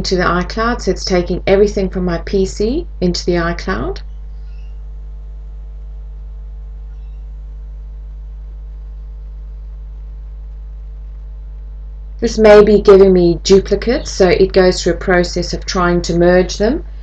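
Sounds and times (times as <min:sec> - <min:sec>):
electrical hum: 0:00.0 - 0:17.0.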